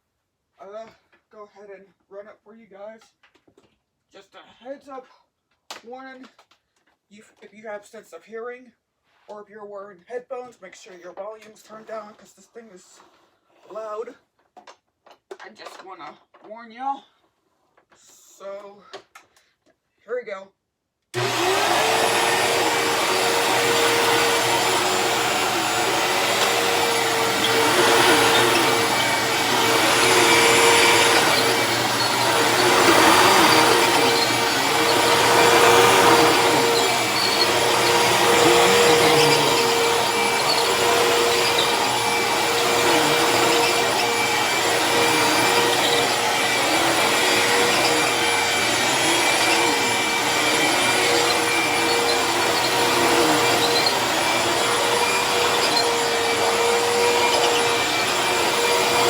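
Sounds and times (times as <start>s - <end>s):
vacuum cleaner motor whine: 21.2s - 59.0s.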